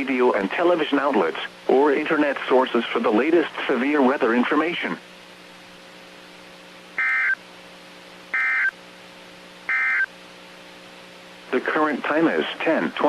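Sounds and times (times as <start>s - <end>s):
steady low hum: 0.0s - 13.0s
electronic data bursts: 7.0s - 7.4s, 8.3s - 8.7s, 9.7s - 10.1s.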